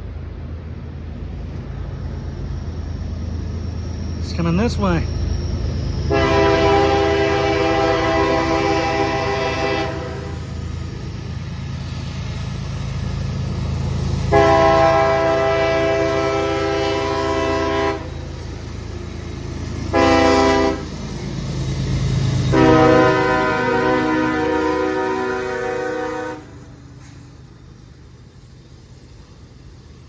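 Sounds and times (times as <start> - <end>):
train rumble: 0.0 - 30.0
locomotive air horn blasts: 6.1 - 10.4, 14.3 - 18.2, 19.9 - 20.9, 22.5 - 26.7.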